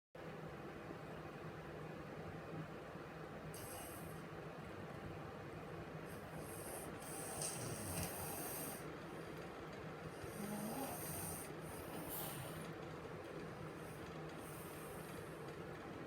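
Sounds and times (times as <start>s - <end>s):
girl snoring: 10.3s - 11.5s.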